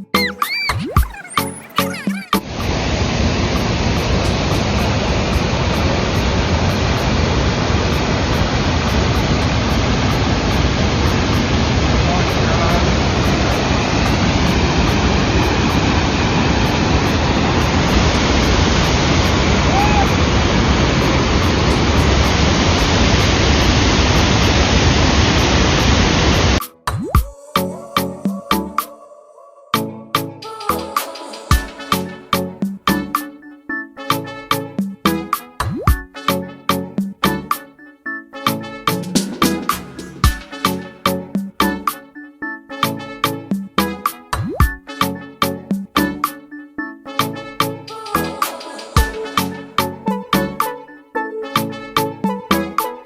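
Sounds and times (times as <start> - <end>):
waterfall rushing water: 2.4 - 26.5
music with percussive hits: 26.6 - 27.4, 30.6 - 33.3, 34.5 - 37.6, 38.5 - 42.0, 42.8 - 46.4, 47.2 - 50.8.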